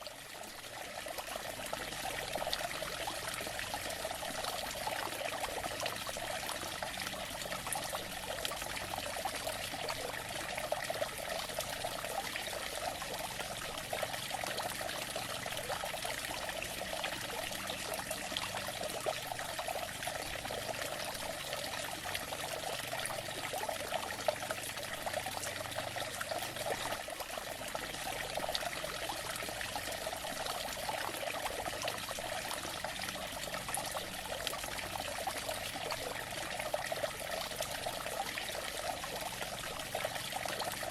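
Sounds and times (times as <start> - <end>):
water trickling over rocks: 0.0 - 40.9.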